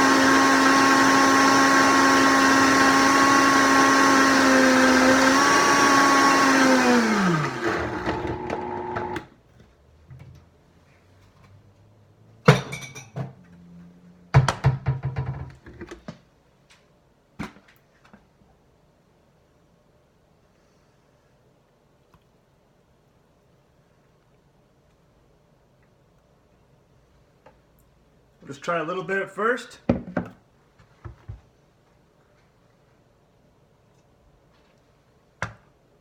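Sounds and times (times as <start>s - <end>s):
blender motor running: 0.0s - 9.3s
sharp knocks and clatters: 14.4s - 16.0s.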